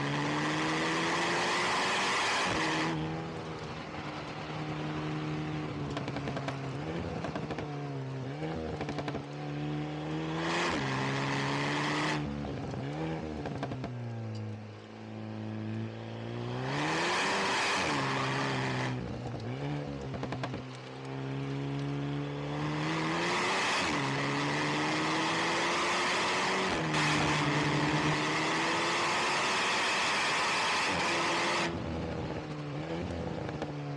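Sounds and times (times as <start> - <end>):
car engine revving hard: 0.0 - 3.0, 10.1 - 12.2, 16.6 - 19.0, 21.8 - 31.8.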